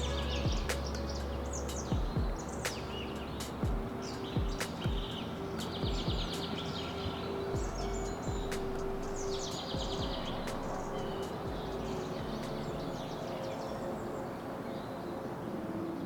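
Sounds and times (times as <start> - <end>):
bird trill: 0.0 - 16.0
small birds chirping: 0.0 - 16.0.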